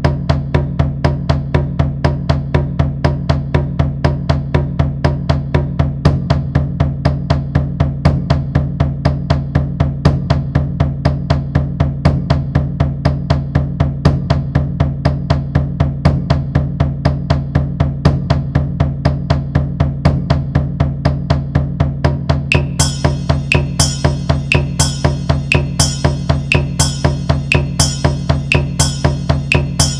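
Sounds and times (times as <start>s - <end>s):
drums struck in steady pulse: 0.0s - 29.9s.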